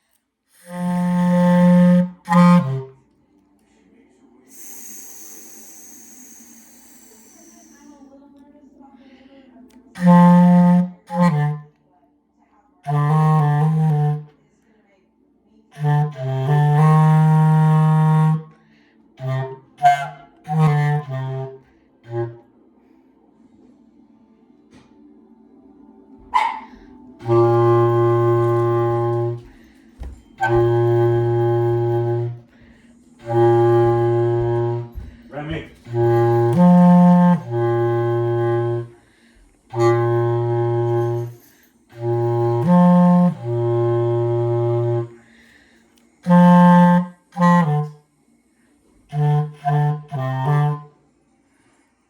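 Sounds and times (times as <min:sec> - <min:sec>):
wind instrument slow melody: 0:00.5 - 0:03.0, 0:04.5 - 0:07.9, 0:09.9 - 0:11.8, 0:12.8 - 0:14.3, 0:15.7 - 0:18.6, 0:19.2 - 0:22.6, 0:27.2 - 0:48.0, 0:49.1 - 0:51.1.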